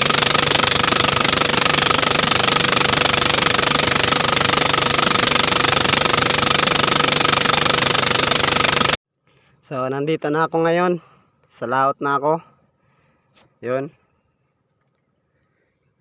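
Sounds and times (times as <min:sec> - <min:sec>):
small boat engine knocking: 0:00.0 - 0:09.0.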